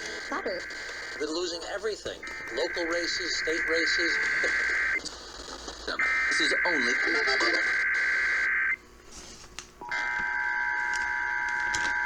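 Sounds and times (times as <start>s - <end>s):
voice over radio: 0.0s - 5.0s, 5.8s - 8.0s
digital header data bursts: 0.0s - 8.8s
two-tone attention signal: 2.2s - 5.0s
warbling data screech: 2.2s - 5.0s, 5.9s - 8.8s.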